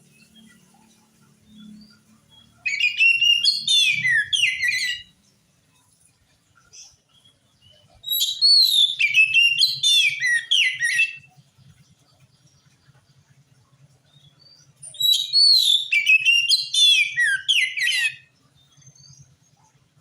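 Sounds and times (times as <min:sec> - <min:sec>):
songbird singing whistles: 0:01.5 - 0:05.3, 0:06.8 - 0:11.4, 0:14.1 - 0:19.7.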